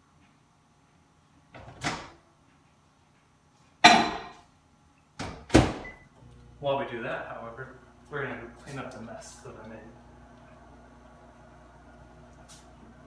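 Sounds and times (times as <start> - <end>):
microwave door shutting: 5.2 - 6.0.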